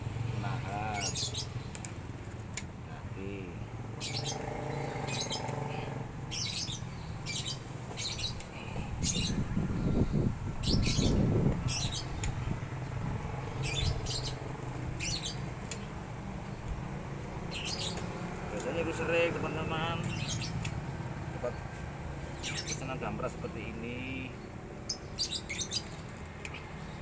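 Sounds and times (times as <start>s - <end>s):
small bird chirping: 0.8s - 1.9s, 4.0s - 18.2s, 20.0s - 20.8s, 22.4s - 22.9s, 24.2s - 27.0s.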